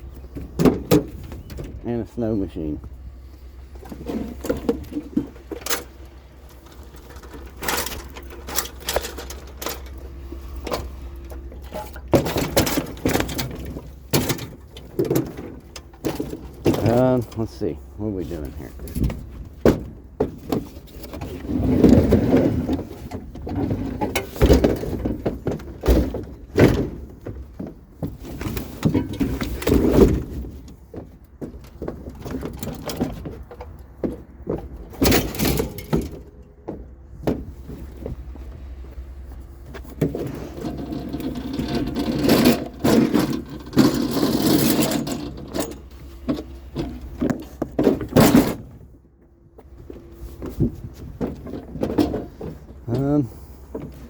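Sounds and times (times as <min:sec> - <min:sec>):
metal equipment clanking: 0:03.8 - 0:19.2, 0:32.0 - 0:36.9, 0:39.9 - 0:48.8
metal scraping and squeaking: 0:39.8 - 0:48.7.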